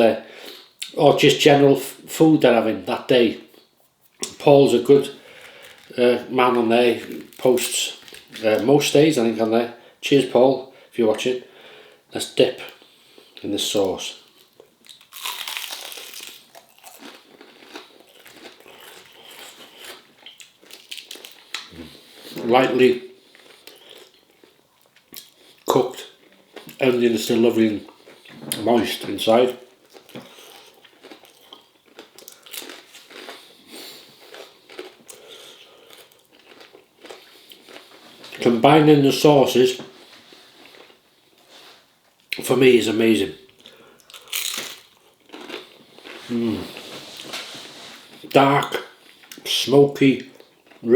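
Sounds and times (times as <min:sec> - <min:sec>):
chewing: 0:14.2 - 0:22.4, 0:23.3 - 0:26.8, 0:29.5 - 0:38.4, 0:43.6 - 0:47.4
crunchy bite: 0:14.9 - 0:22.1, 0:44.1 - 0:45.7.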